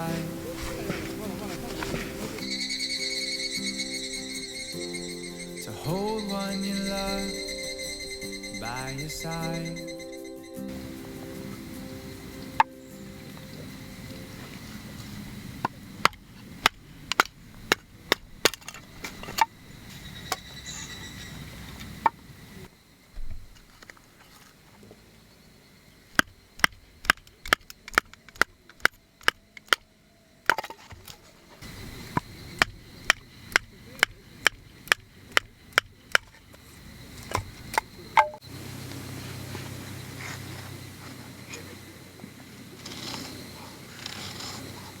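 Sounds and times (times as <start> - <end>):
firewood splitting knocks: 30.5 - 36.4, 37.2 - 38.4.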